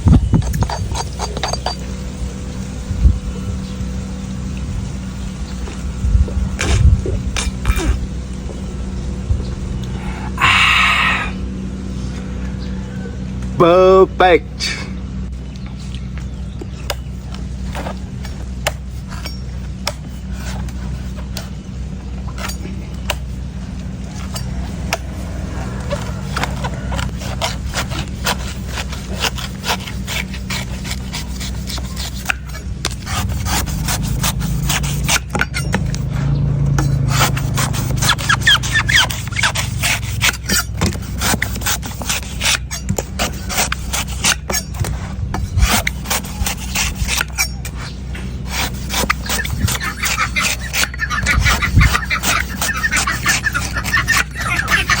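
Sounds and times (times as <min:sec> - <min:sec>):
knife scraping coconut: 0:00.0 - 0:02.6, 0:06.6 - 0:08.1, 0:16.6 - 0:55.0.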